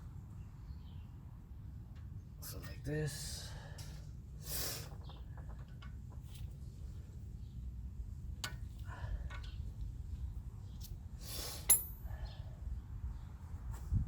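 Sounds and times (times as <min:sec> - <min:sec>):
metal tools clinking: 0:11.6 - 0:12.2.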